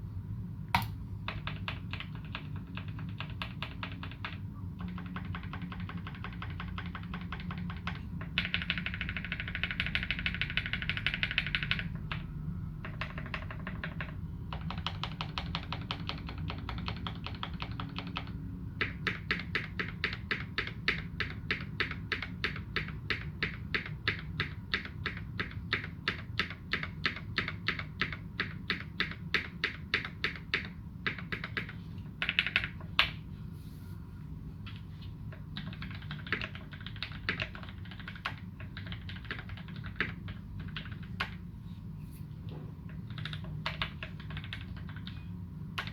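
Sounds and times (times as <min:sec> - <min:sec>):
low steady hum: 0:00.0 - 0:45.9
fast typing on mechanical keyboard: 0:00.8 - 0:33.1, 0:35.3 - 0:41.5, 0:42.9 - 0:45.2.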